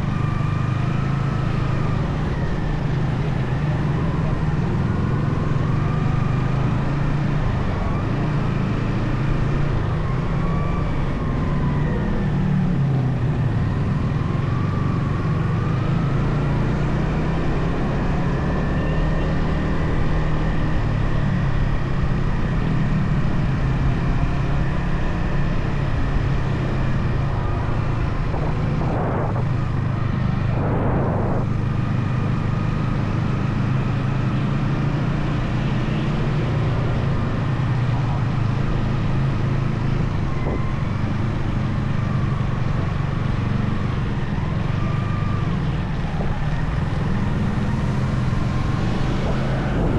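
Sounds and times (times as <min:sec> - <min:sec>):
rush of noise: 0:26.9 - 0:32.8, 0:45.2 - 0:49.9.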